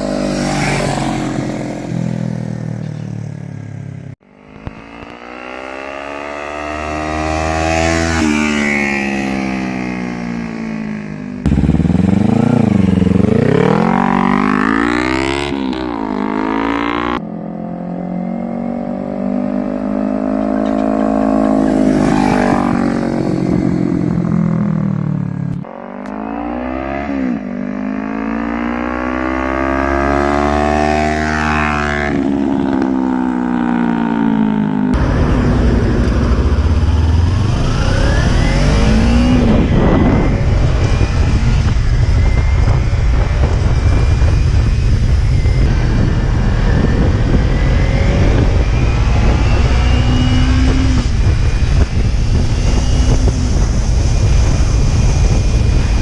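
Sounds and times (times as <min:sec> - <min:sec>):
motorcycle engine accelerating: 0:00.0 - 0:56.0
motorcycle passing by: 0:00.0 - 0:56.0
heavy wind noise: 0:11.4 - 0:17.2, 0:19.8 - 0:24.9, 0:34.9 - 0:56.0.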